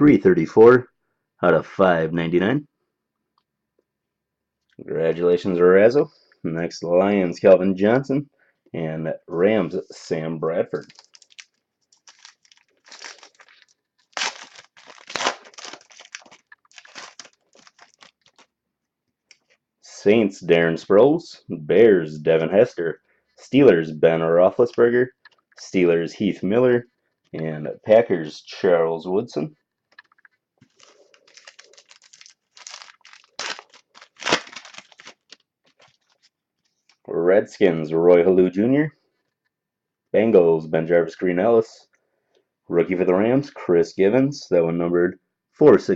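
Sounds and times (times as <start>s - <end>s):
trading cards and foil wrappers rustling: 10.7s - 18.5s, 30.0s - 37.0s.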